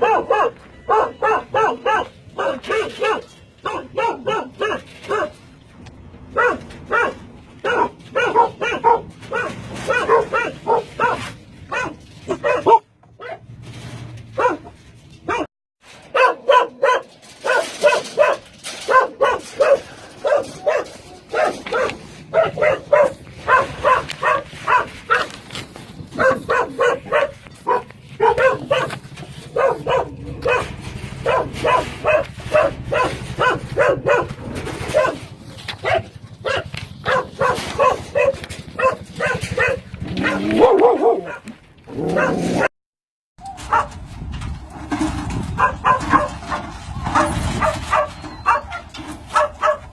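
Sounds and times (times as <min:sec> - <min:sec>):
dogs barking: 0:00.0 - 0:05.5, 0:06.2 - 0:13.5, 0:14.3 - 0:42.7, 0:43.5 - 0:44.0, 0:45.5 - 0:49.9.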